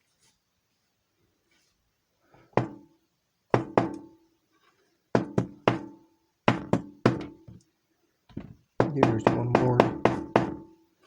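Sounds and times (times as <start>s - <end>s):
padlock knocking on hard surface: 3.6s - 4.0s, 5.2s - 5.9s, 6.5s - 7.6s, 8.3s - 10.7s.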